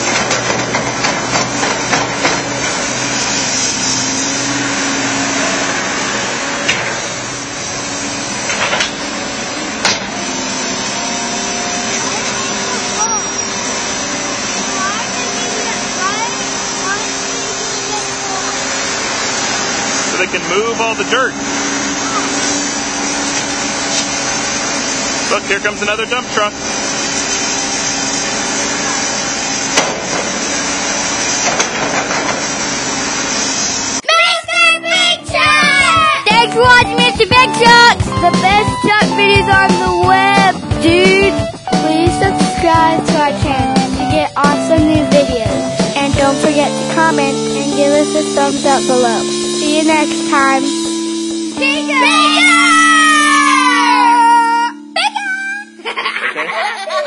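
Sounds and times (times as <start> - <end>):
sharp metallic knocks: 0.0 - 4.7, 29.7 - 33.2
loud rushing noise: 0.0 - 41.7
diesel engine running: 0.0 - 56.4.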